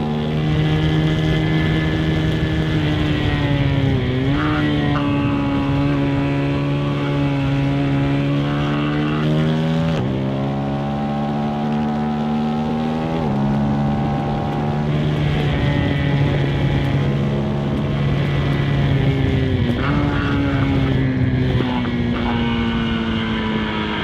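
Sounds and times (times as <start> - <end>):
motorcycle engine pulling under load: 0.0 - 24.0.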